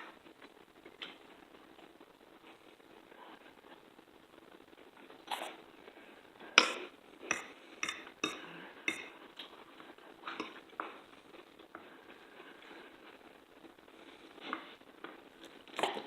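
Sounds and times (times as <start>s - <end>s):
cutlery clinking on plate: 6.6s - 9.2s.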